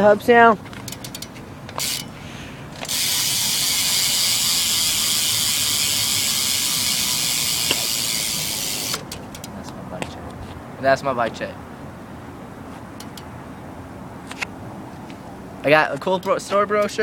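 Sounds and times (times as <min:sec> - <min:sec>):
bicycle hub ratcheting buzz: 0:00.7 - 0:09.5, 0:13.0 - 0:13.3.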